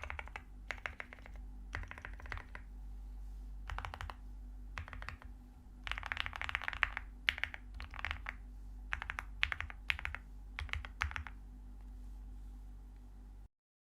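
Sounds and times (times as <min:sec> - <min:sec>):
typing on mechanical keyboard: 0:00.0 - 0:02.7, 0:03.7 - 0:04.2, 0:04.8 - 0:11.4
steady low hum: 0:00.0 - 0:13.5.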